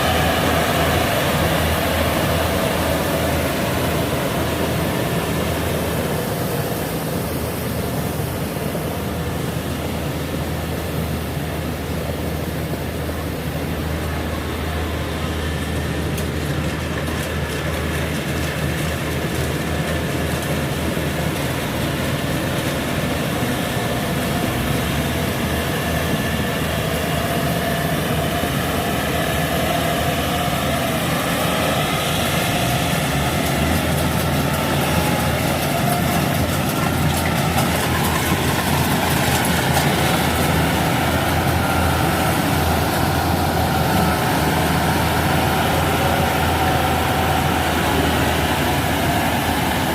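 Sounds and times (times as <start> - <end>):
combine harvester diesel engine: 0.0 - 49.9
machinery whining: 0.0 - 49.9.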